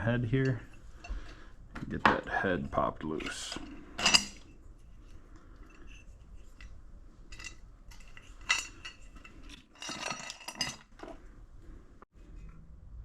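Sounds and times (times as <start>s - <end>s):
steel clinking on metal: 3.1s - 11.2s.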